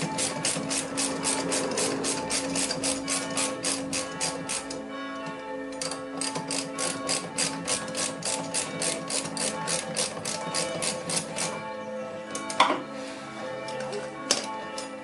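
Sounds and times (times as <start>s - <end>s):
ratchet wrench clicking: 0.0s - 4.8s, 5.8s - 11.6s.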